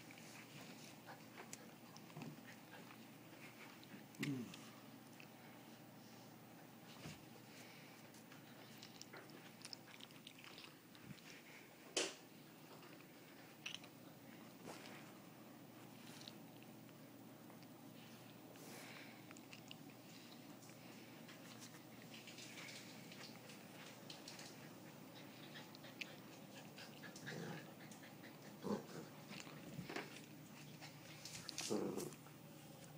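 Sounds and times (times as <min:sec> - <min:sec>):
dog chewing: 0:08.3 - 0:11.6.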